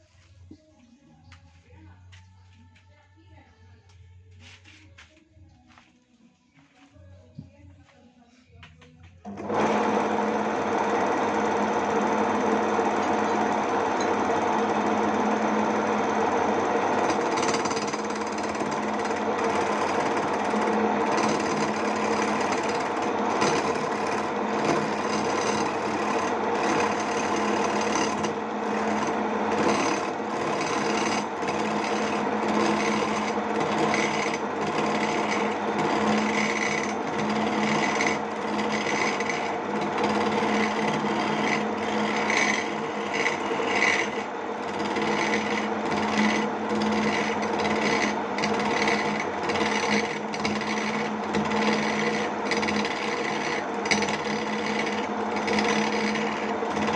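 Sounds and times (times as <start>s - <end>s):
electric motor humming: 9.3s - 56.9s
cutting tool scraping wood: 16.5s - 56.9s.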